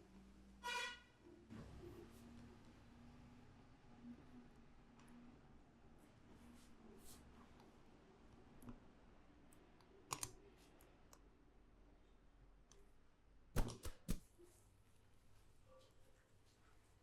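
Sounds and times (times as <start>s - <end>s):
sharp clicks during neck massage: 13.6s - 14.2s.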